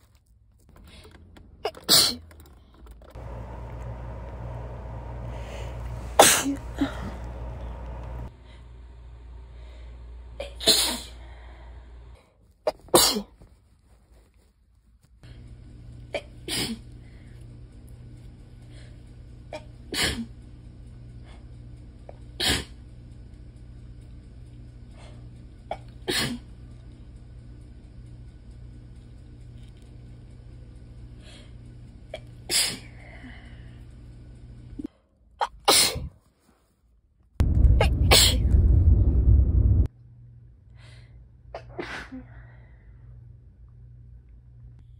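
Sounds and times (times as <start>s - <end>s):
steady low hum: 0.5s - 36.1s, 37.4s - 44.9s
person sneezing: 6.2s - 7.2s, 10.4s - 11.2s, 12.7s - 13.4s, 35.4s - 36.1s, 41.6s - 42.3s.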